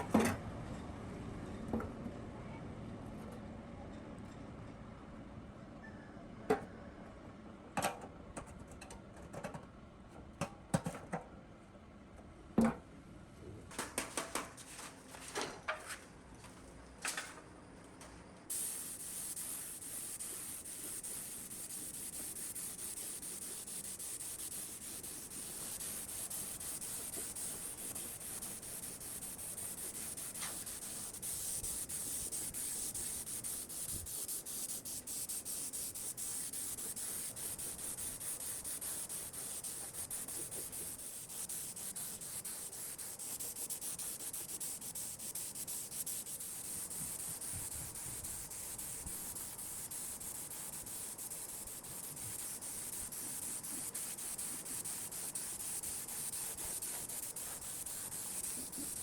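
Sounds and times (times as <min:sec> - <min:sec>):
abrasive hissing rub: 0:18.5 - 0:59.0.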